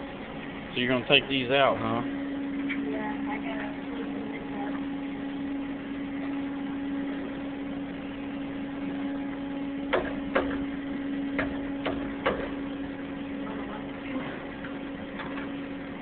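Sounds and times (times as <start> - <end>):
steady machine hum: 0.0 - 16.0
sharp knocks on metal fixture: 9.9 - 10.6, 11.4 - 12.6.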